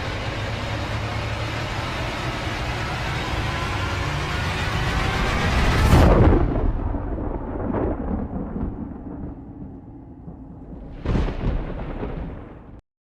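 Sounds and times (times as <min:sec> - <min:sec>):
steady rushing noise: 0:00.0 - 0:12.2
deep soundtrack booms: 0:05.7 - 0:12.8.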